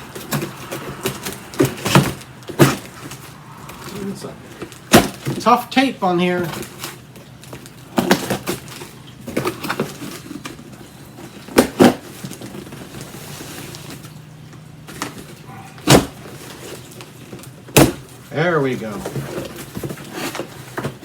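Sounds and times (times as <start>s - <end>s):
cardboard rustling: 0.0s - 21.0s
sharp cardboard knocks: 4.9s - 5.5s, 17.7s - 18.0s
packing tape tearing: 6.5s - 14.1s.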